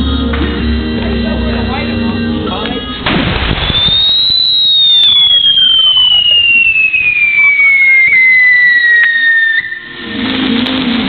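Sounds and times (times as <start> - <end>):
fainter firework whistles: 3.5 - 10.2
shrill firework whistle falling: 3.5 - 10.2.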